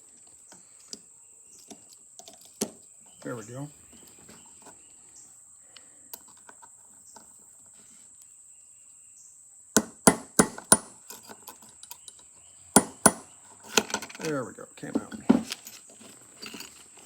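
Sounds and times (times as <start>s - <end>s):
hammer striking metal punch: 9.8s - 11.0s, 12.8s - 13.3s.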